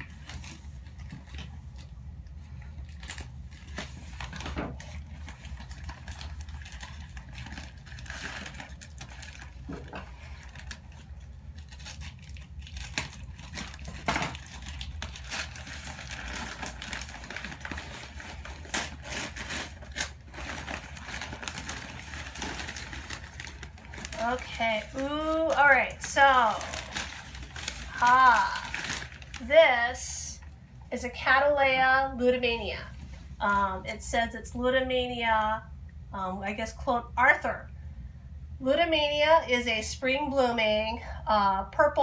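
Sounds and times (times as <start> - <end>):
paper packing crinkling and tearing: 0.0 - 29.6.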